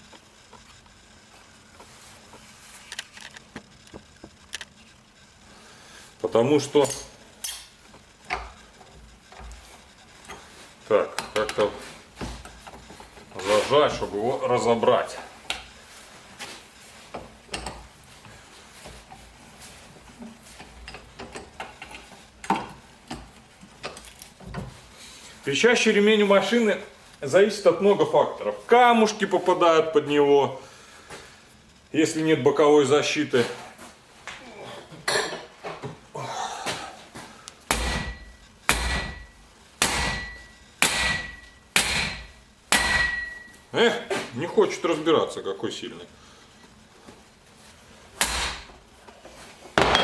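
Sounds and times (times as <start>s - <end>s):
hammer striking metal: 37.7s - 43.5s, 49.8s - 50.0s.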